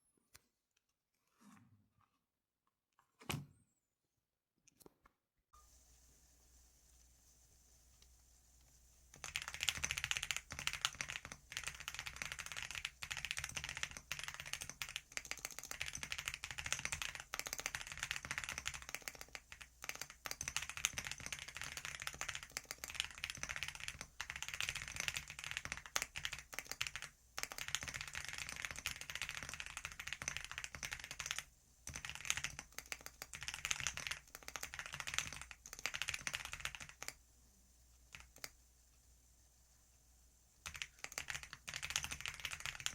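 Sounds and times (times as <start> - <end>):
fast keyboard typing: 9.1 - 37.2, 38.1 - 38.6, 40.6 - 42.9.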